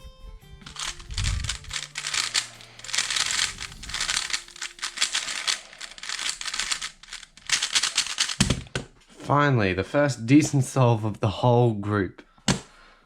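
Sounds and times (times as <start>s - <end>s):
puzzle cube plastic clicking: 0.7s - 8.7s.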